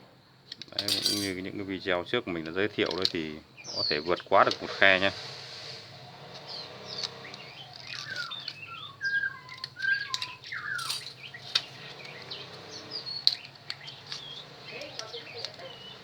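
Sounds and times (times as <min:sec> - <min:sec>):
small birds chirping: 0:00.0 - 0:16.0
sharp clicks: 0:05.7 - 0:16.0.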